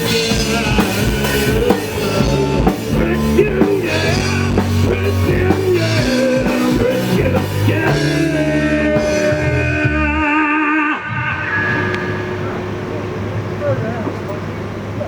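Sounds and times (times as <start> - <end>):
drum kit: 0.0 - 10.4
person singing: 0.0 - 12.2
electric guitar: 0.0 - 13.6
wavering held notes: 0.0 - 14.2
bass guitar: 0.0 - 14.6.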